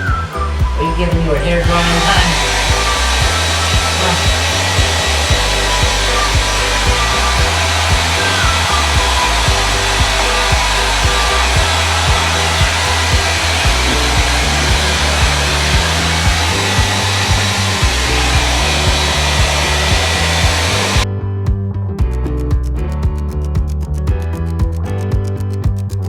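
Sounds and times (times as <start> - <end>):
background music with steady beat: 0.0 - 26.0
blow dryer running: 1.6 - 21.0.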